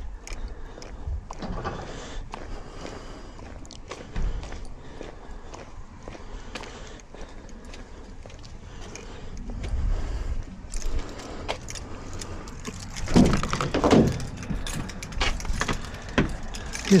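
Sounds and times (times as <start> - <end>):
keys jangling: 10.7 - 17.0
loose things clattering: 10.7 - 17.0.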